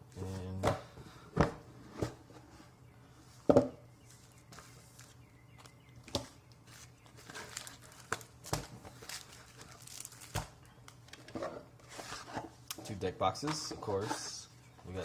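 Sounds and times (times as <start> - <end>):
packaging rustling and crinkling: 6.6 - 12.4.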